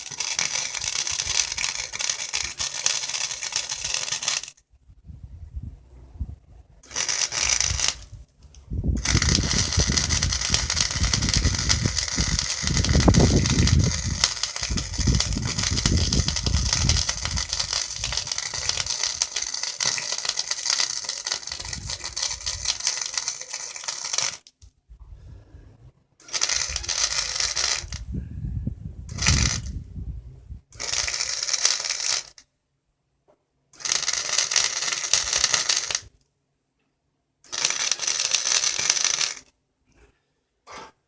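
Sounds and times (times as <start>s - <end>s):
welding arc crackling: 0.0s - 4.6s, 6.8s - 8.2s, 9.0s - 24.5s, 26.2s - 28.0s, 29.1s - 29.7s, 30.8s - 32.4s, 33.8s - 36.1s, 37.5s - 39.5s.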